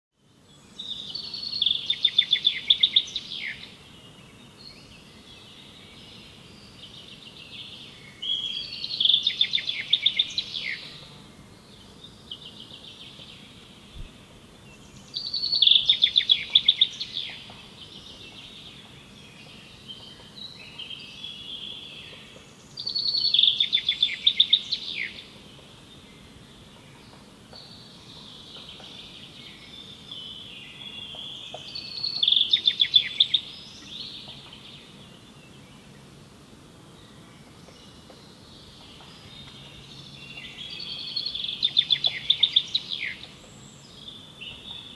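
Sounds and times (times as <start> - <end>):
faint birdsong: 0.2 - 44.9.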